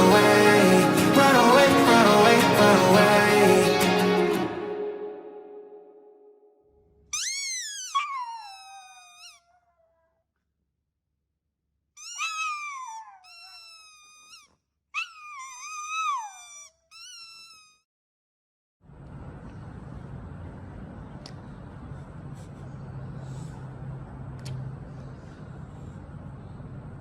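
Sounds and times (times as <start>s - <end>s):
cat meowing: 7.2s - 10.1s, 12.0s - 17.8s
steady low rumbling: 18.9s - 27.0s.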